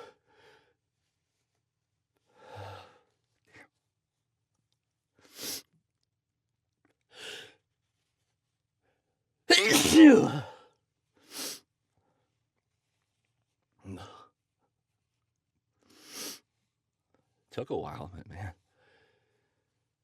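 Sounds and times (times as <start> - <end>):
person sneezing loudly: 9.5 - 10.6.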